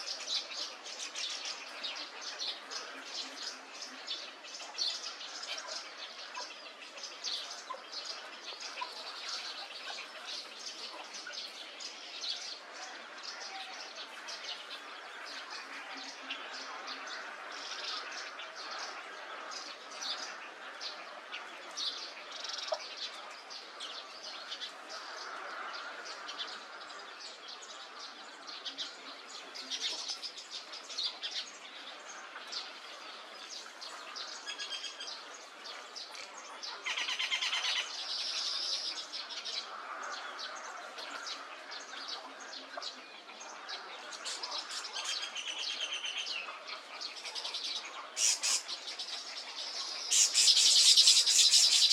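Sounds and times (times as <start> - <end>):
birds chirping and whistling: 50.1 - 51.9.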